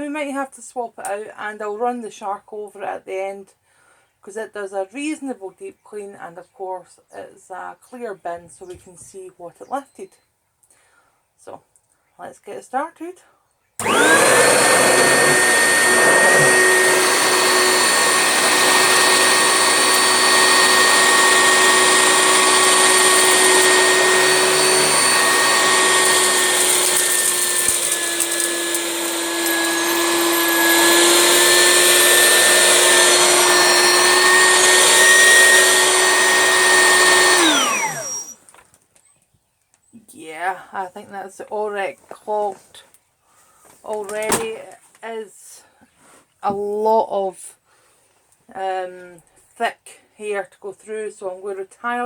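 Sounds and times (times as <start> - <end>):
vacuum cleaner winding down: 13.8 - 38.4
vacuum cleaner whining: 13.8 - 38.5.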